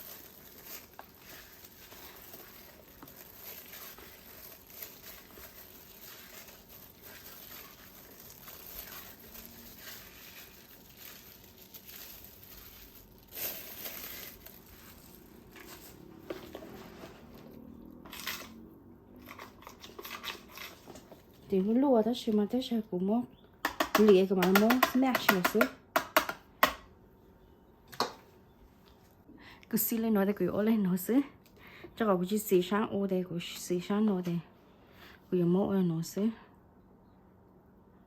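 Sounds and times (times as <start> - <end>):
plastic crinkling and rustling: 0.0 - 18.6, 19.2 - 22.4.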